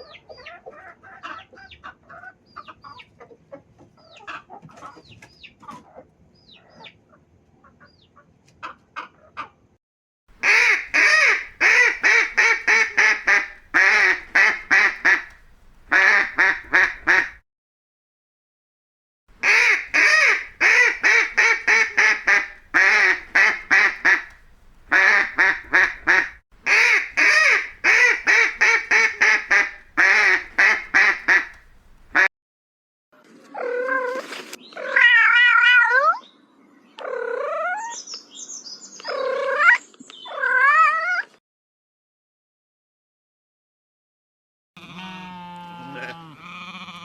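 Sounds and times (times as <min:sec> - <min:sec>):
duck quacking: 0:10.4 - 0:17.4, 0:19.4 - 0:32.3.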